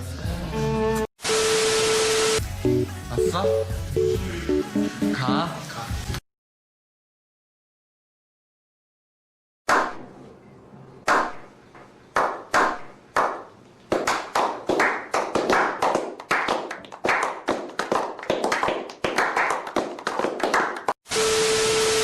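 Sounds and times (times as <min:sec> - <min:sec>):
hand claps with echo: 0:12.2 - 0:21.0.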